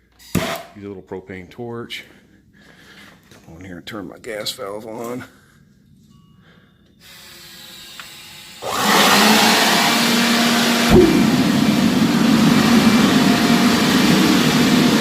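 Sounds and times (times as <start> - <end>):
leaf blower: 8.6 - 15.0
forge burner roaring: 8.8 - 15.0
sudden thump: 10.9 - 12.0.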